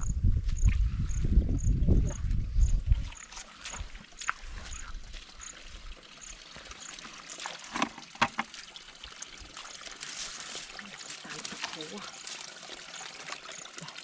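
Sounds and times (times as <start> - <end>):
water trickling over rocks: 2.2 - 14.0
sharp knocks or splashes: 7.4 - 8.6.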